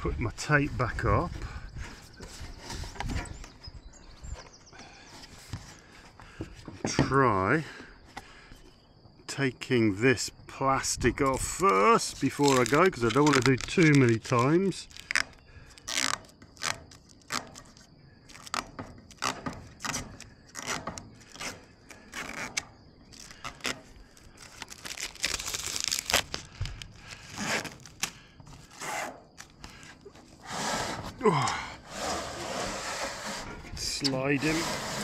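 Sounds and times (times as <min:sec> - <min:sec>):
plastic film peeling off metal: 0:12.1 - 0:28.8.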